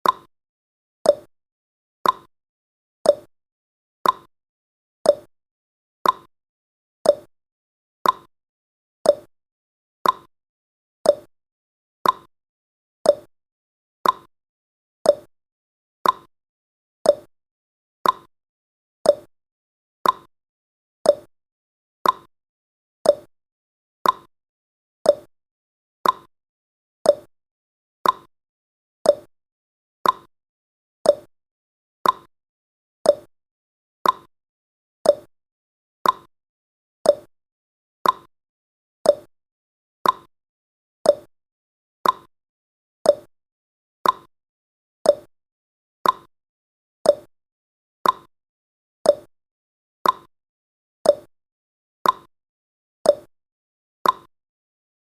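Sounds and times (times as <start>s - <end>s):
clock ticking: 10.0s - 10.3s, 32.0s - 32.3s, 34.0s - 34.3s, 36.0s - 36.3s, 38.0s - 38.3s, 40.0s - 40.3s, 42.0s - 42.3s, 44.0s - 44.3s, 46.0s - 46.3s, 54.0s - 54.3s.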